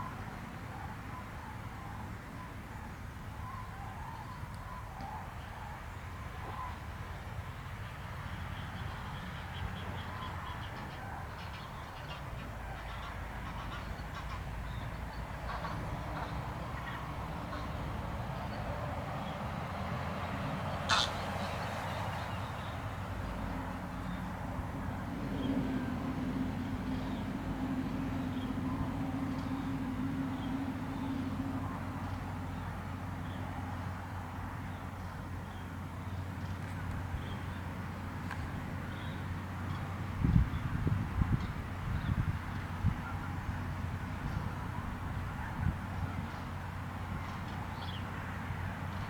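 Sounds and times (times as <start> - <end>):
engine rumble: 0.0 - 49.0
cranes and geese honking: 20.8 - 22.7.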